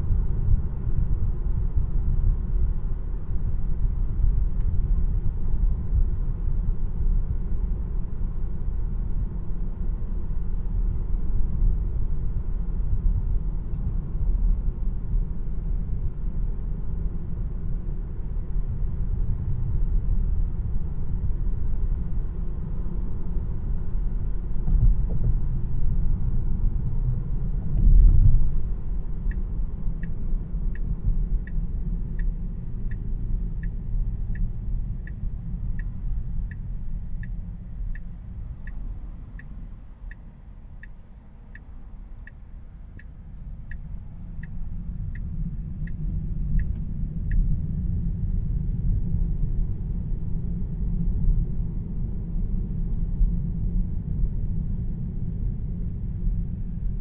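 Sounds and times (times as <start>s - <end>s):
road and tyre rumble in car: 0.0s - 57.0s.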